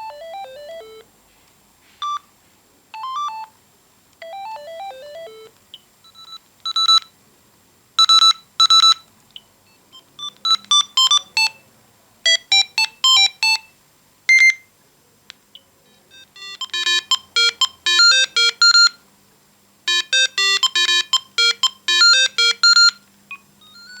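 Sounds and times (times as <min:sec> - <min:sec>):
electronic beep ringtone melodies: 0:00.0 - 0:01.0, 0:04.2 - 0:05.5, 0:16.1 - 0:19.0, 0:19.9 - 0:24.0.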